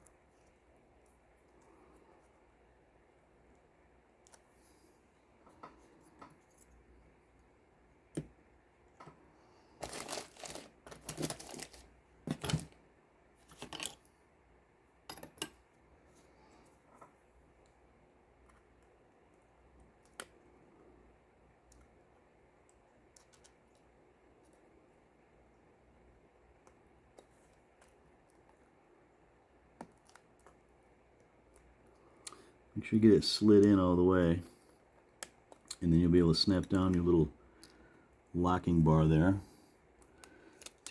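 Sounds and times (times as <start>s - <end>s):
faint plastic clicks: 40.0s - 40.9s.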